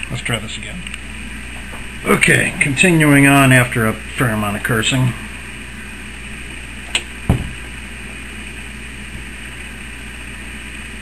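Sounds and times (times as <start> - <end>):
steady low hum: 0.0 - 11.0
sharp click: 6.9 - 7.1
heavy knock: 7.3 - 7.6.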